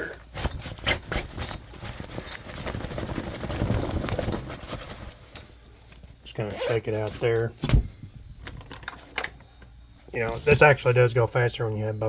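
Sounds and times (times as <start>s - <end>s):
rough rustling of cloth bag: 0.3s - 5.6s, 6.5s - 7.3s.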